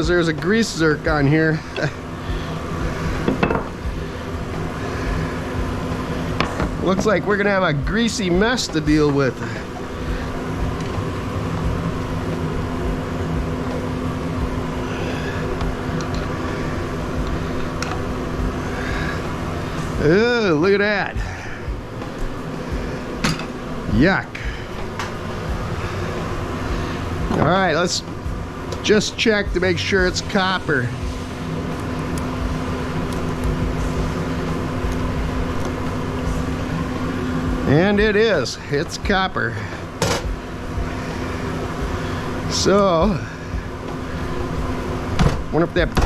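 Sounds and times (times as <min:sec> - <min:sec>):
machine humming: 0:00.0 - 0:46.0.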